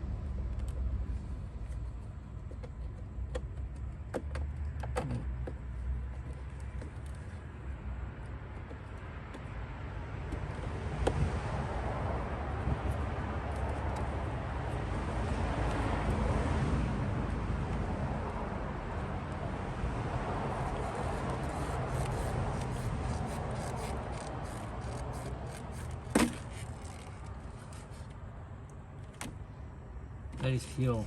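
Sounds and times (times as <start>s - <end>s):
rubbing and handling noises: 20.6s - 28.2s.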